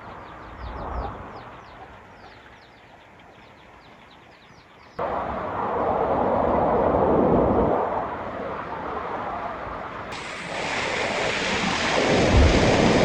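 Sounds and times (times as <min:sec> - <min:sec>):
loud steady rushing noise: 0:05.0 - 0:13.0.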